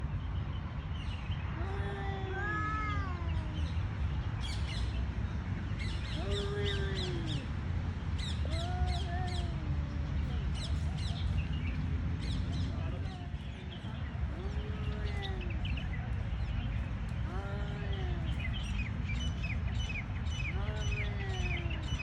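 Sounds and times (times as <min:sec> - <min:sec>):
small birds chirping: 0:00.2 - 0:22.0
cat yowling: 0:01.6 - 0:03.6.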